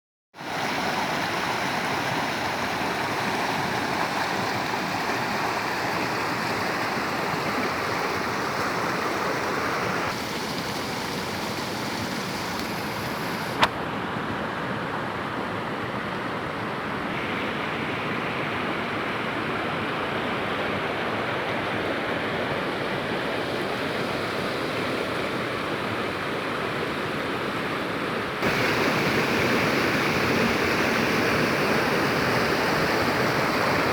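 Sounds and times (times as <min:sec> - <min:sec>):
waterfall rushing water: 0:00.4 - 0:13.7, 0:28.3 - 0:33.9.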